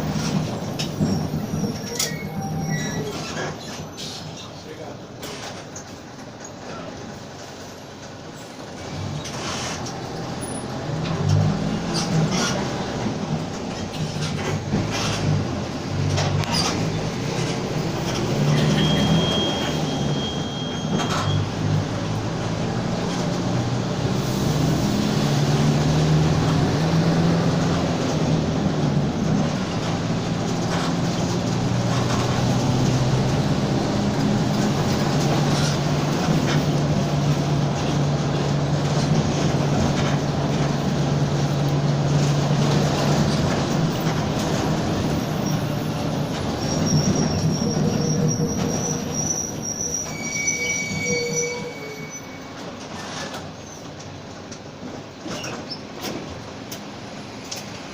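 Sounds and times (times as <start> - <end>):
bus engine drone: 0.0 - 57.9
high squeal: 0.5 - 4.5, 16.5 - 21.7, 45.1 - 53.9.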